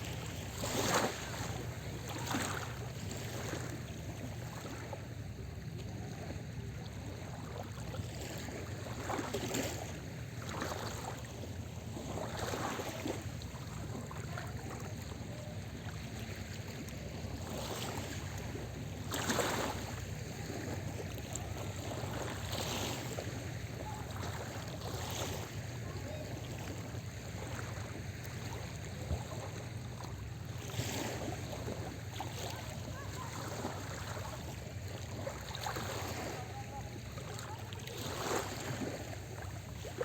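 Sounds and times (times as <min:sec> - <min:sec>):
small waves washing ashore: 0:00.0 - 0:40.0.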